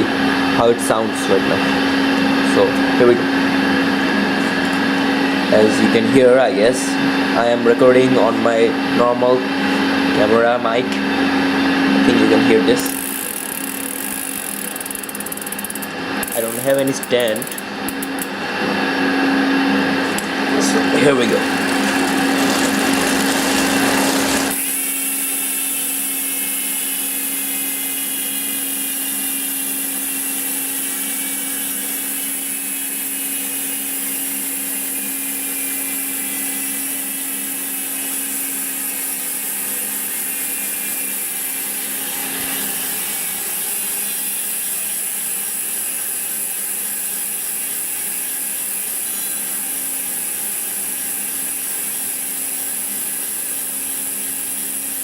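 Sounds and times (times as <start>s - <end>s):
bicycle freehub ratchet buzzing: 9.6s - 18.4s, 20.0s - 55.0s.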